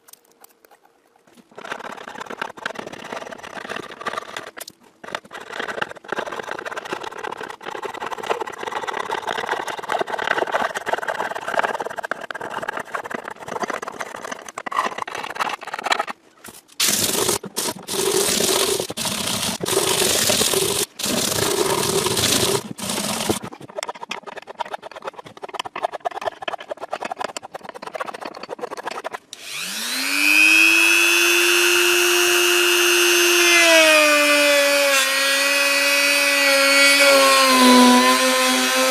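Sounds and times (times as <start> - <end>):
power tool motor whine: 29.4 - 38.9.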